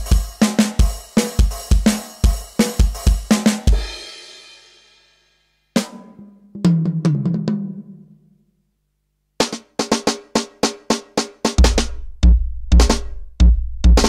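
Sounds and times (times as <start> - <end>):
electronic drum kit playing: 0.0 - 4.7, 9.4 - 14.0.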